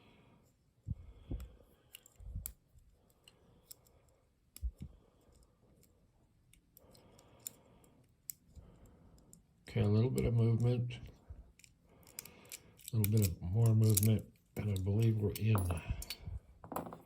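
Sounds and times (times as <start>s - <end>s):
small metallic clicks: 1.8s - 8.6s, 11.5s - 16.2s.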